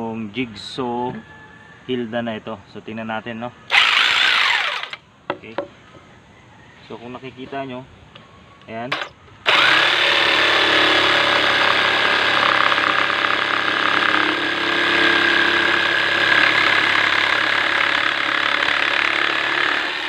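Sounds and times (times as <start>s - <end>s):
electric jigsaw cutting wood: 3.7s - 5.0s, 8.9s - 20.0s.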